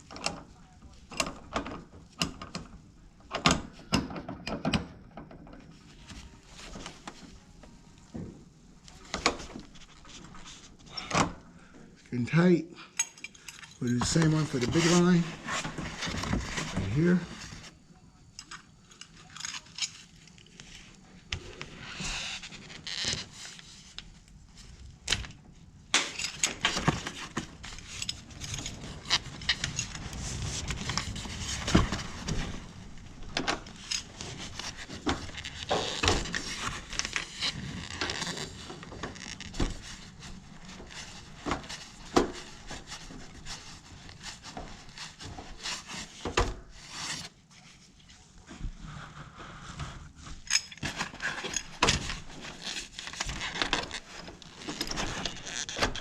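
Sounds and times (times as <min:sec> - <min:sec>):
rustling handling noise: 0:13.3 - 0:17.8, 0:18.9 - 0:56.0.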